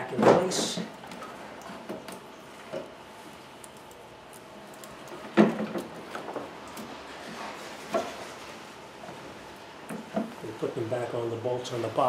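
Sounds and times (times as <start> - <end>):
alternator clunking into brackets: 5.0 - 6.8
small knocks: 5.1 - 6.9.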